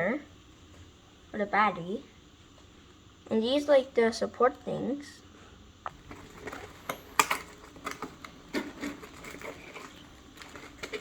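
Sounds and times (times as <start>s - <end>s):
plastic clicks and rustles: 5.9s - 11.0s.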